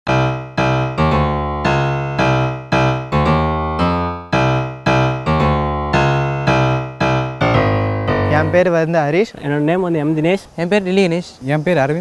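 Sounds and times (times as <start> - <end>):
keyboard chords: 0.0 - 8.9.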